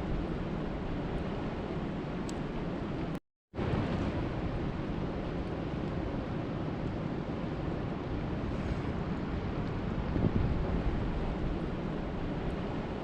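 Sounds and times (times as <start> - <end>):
wind buffeting microphone: 3.6 - 13.0.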